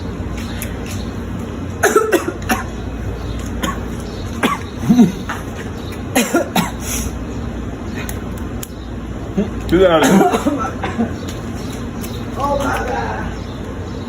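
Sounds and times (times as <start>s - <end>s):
person coughing: 1.8s - 2.7s, 3.6s - 5.5s, 6.2s - 6.8s, 10.0s - 11.1s.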